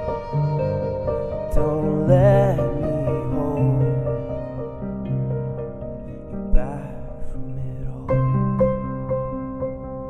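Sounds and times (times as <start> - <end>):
instrumental music with picked notes: 0.0 - 7.2.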